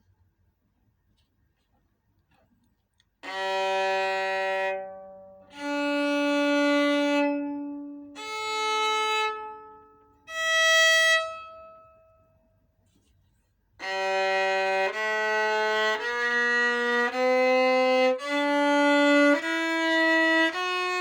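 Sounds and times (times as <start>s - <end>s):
violin playing long bowed notes: 3.2s - 12.2s, 13.8s - 21.0s.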